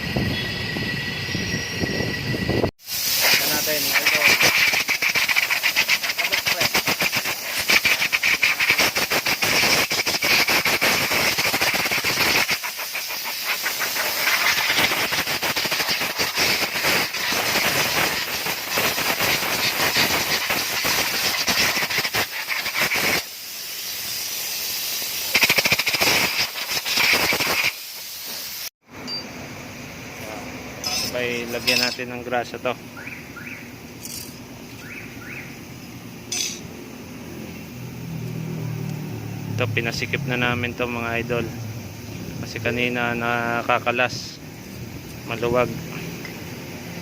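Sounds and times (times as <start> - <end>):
brake hissing and squealing: 0.0 - 28.7, 30.1 - 38.4.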